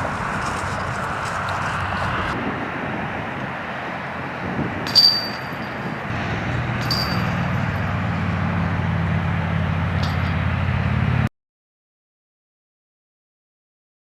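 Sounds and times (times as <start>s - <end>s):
outdoor background noise: 0.0s - 11.3s
vehicle engine humming: 0.0s - 11.3s
sharp metallic clink: 6.7s - 7.9s, 10.0s - 10.4s.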